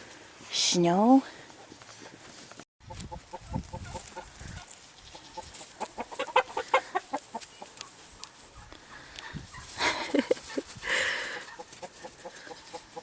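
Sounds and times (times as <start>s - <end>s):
chickens clucking: 2.8s - 13.0s.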